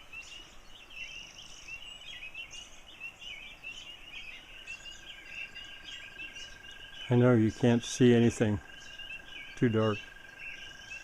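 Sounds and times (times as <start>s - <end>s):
spring peepers peeping: 0.0s - 11.0s.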